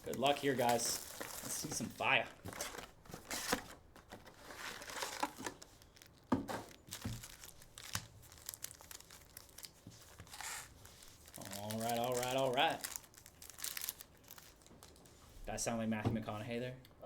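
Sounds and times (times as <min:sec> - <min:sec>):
plastic wrapping tearing and crinkling: 0:00.0 - 0:15.1.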